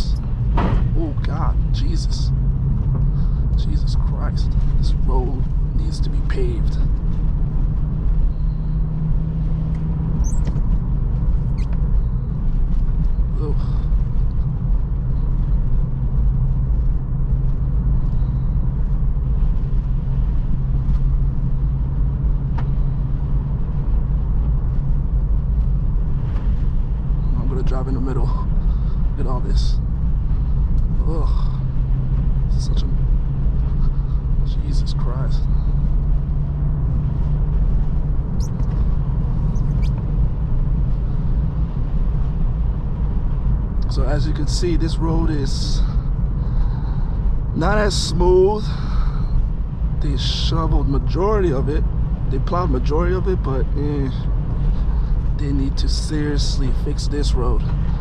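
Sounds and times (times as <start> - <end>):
tyre and engine rumble: 0.0 - 58.0
high-pitched squeaks: 10.2 - 10.6, 38.4 - 38.8, 39.4 - 40.0.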